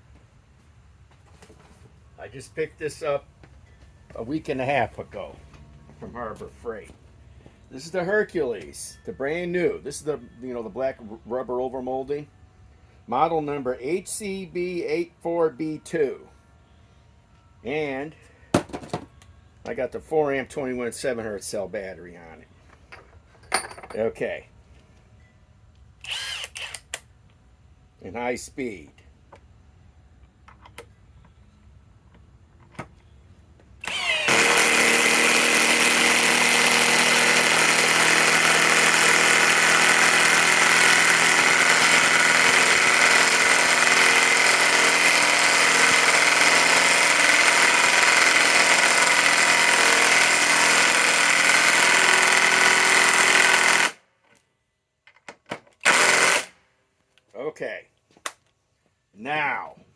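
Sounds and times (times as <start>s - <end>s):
impact wrench hammering: 33.9s - 54.0s.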